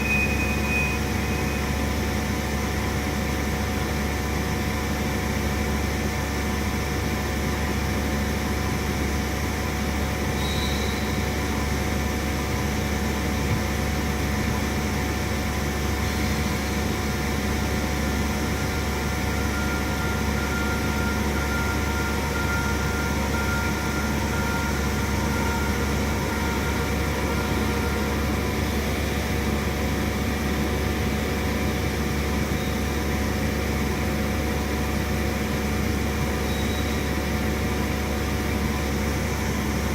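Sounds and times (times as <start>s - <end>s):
faint high whine: 0.0s - 2.0s, 16.1s - 30.8s
milling machine humming: 6.7s - 34.8s.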